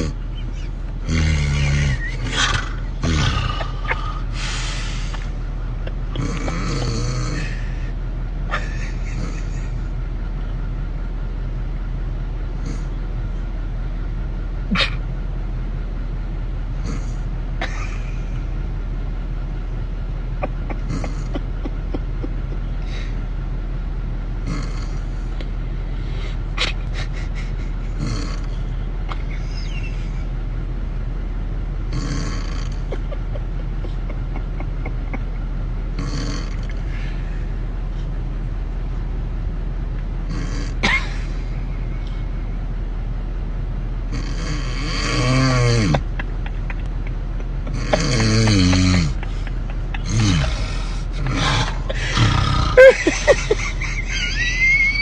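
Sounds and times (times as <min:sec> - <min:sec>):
steady low hum: 0:00.0 - 0:55.0
steady low rumble: 0:00.0 - 0:55.0
person snoring: 0:01.0 - 0:04.9, 0:06.2 - 0:07.7, 0:44.1 - 0:46.0, 0:47.7 - 0:49.2, 0:50.0 - 0:53.0.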